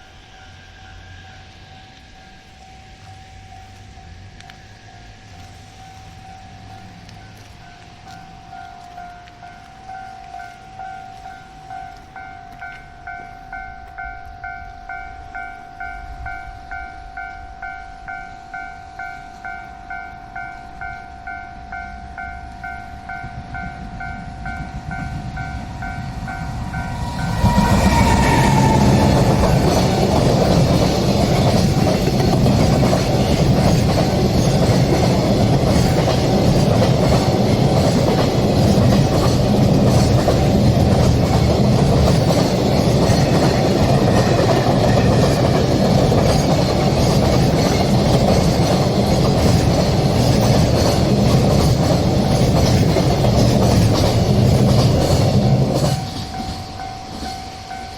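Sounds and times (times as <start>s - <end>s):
train passing: 0.0s - 57.9s
level crossing warning bell: 0.4s - 37.6s, 55.4s - 57.9s.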